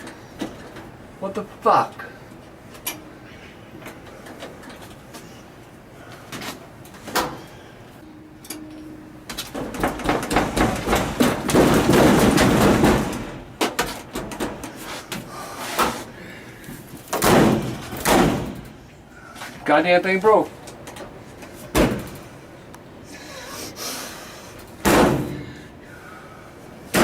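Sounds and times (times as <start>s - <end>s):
rapid banging and rattling: 9.3s - 15.2s, 17.1s - 18.8s
banging on dryer cabinet: 9.5s - 14.7s, 17.2s - 18.7s
dryer door slamming: 9.5s - 14.7s, 17.2s - 18.8s, 21.7s - 22.2s, 24.8s - 25.5s.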